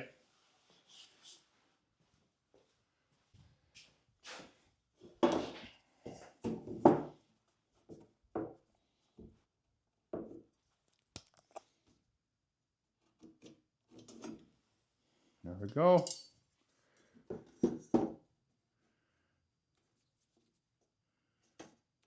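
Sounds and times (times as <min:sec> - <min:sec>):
tools and wood knocking on bench: 0:05.2 - 0:07.2, 0:07.9 - 0:09.4, 0:10.1 - 0:10.5, 0:17.3 - 0:18.2.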